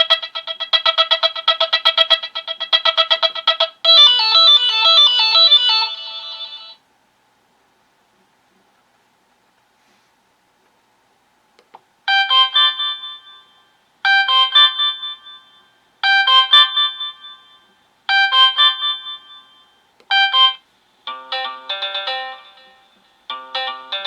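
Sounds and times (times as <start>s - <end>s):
bright melodic ringtone: 0.0s - 6.8s, 20.2s - 24.0s
quick ringtone run of notes: 0.0s - 6.8s, 20.1s - 24.0s.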